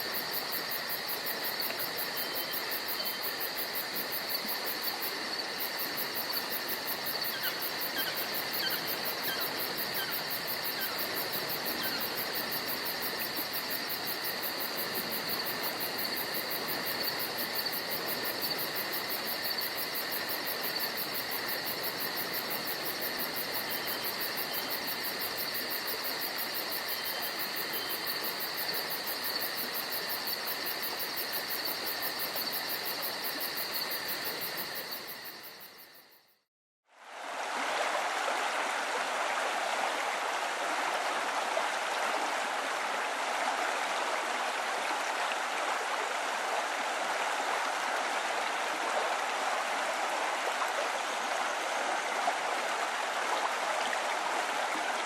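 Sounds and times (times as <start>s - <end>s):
crickets and insects trilling: 0.0s - 36.4s.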